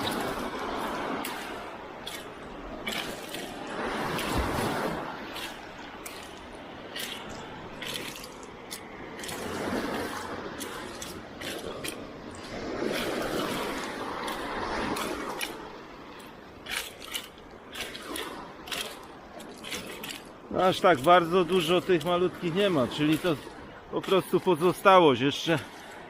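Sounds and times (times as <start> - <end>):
small clicks and drips: 0.0 - 3.6, 5.3 - 12.5, 13.5 - 21.2
sea water washing and splashing: 0.0 - 26.0.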